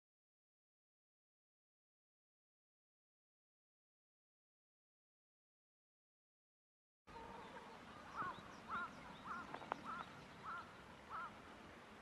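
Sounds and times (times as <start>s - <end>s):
pheasant calling harsh notes: 7.1s - 11.4s.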